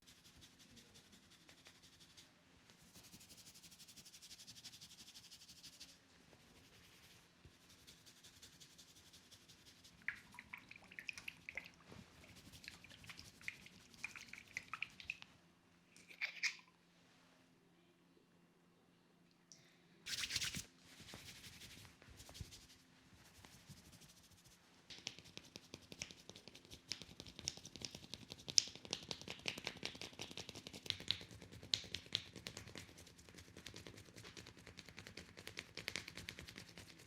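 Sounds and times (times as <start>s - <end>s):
fingers rubbing through hair: 0.0s - 11.5s, 12.1s - 15.2s, 20.1s - 37.0s
light clicks and squishes: 9.8s - 16.8s.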